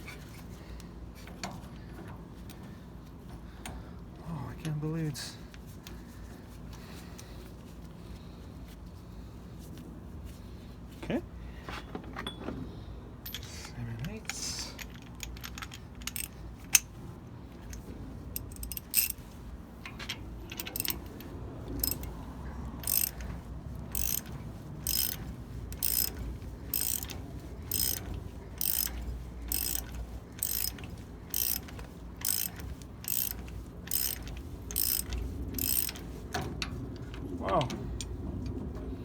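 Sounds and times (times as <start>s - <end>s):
ratchet wrench pawl clicks: 15.2s - 16.8s, 18.4s - 19.2s, 20.5s - 21.2s, 21.8s - 22.2s, 22.8s - 36.2s.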